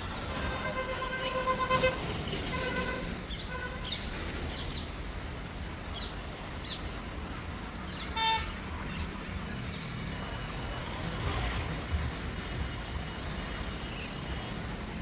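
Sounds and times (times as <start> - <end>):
traffic rumble: 0.0 - 15.0
vehicle horn tooting: 0.6 - 3.8.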